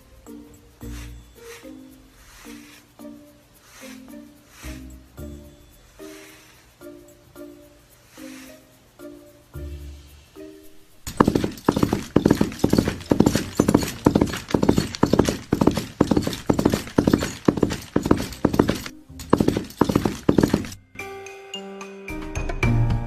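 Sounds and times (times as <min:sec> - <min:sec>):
soft music notes: 0:00.0 - 0:11.1, 0:20.8 - 0:23.0
horse hooves clip-clop: 0:10.7 - 0:20.8.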